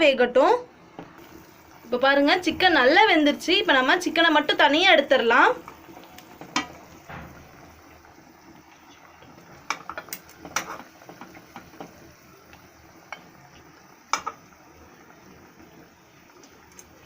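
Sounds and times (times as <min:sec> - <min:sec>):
low steady background noise: 0:00.0 - 0:17.0
spoon knocking and scraping a pan: 0:05.6 - 0:07.5, 0:09.6 - 0:12.1, 0:13.0 - 0:13.4, 0:14.1 - 0:14.5.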